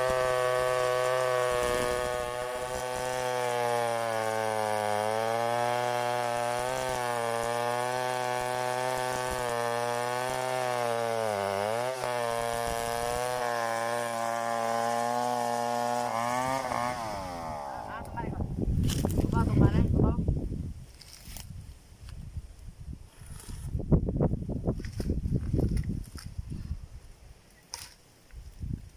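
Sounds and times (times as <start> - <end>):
chainsaw cutting through log: 0.0 - 19.4.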